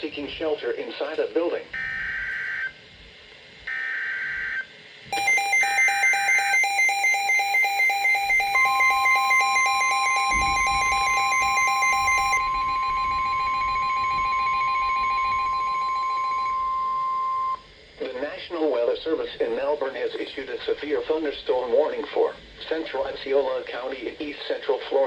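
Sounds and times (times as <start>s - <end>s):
steady warning tone: 4.2s - 17.7s
digital data screeches: 5.2s - 16.8s
buzzy electronic alert beep: 5.2s - 17.6s.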